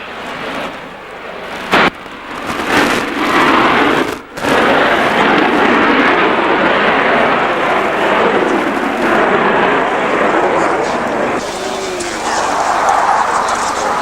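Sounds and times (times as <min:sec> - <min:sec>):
jet engine rushing noise: 0:00.0 - 0:14.0.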